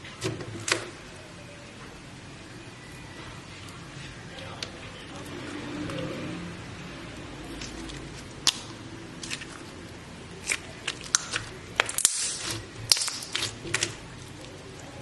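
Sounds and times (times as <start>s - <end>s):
slime clicking and popping: 8.4s - 9.4s, 10.4s - 14.0s.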